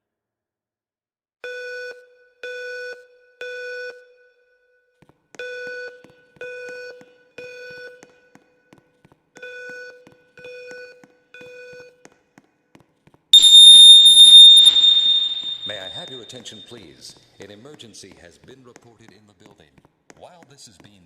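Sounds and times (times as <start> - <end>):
fire alarm buzzing tones: 13.4 - 16.6
recorded evacuation announcements: 13.4 - 16.6.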